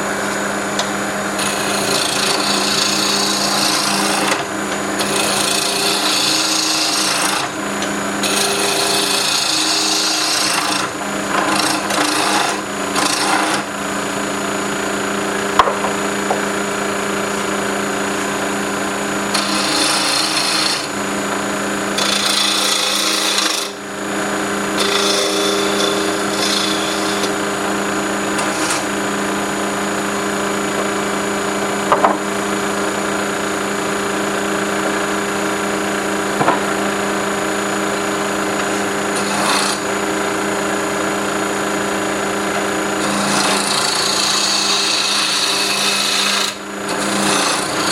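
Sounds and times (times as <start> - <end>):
wood lathe motor hum: 0.0 - 47.9
turning tool scraping wood: 0.3 - 13.7, 19.3 - 23.8, 24.6 - 27.6, 28.2 - 29.0, 38.6 - 40.0, 43.0 - 47.9.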